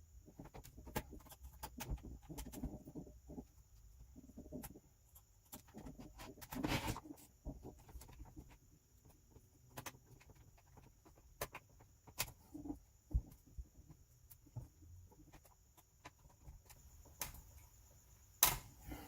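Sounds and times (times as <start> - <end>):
scraping rustle: 4.1 - 11.2.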